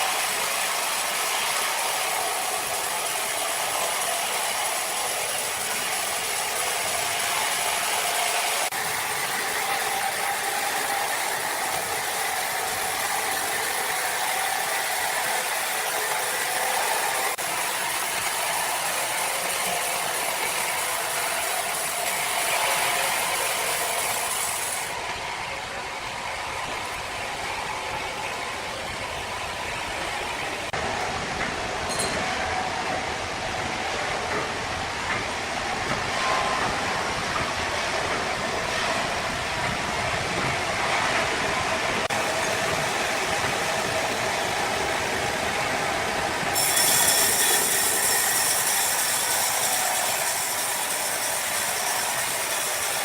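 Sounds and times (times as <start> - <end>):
saw cutting through timber: 0.0 - 25.0, 46.4 - 53.0.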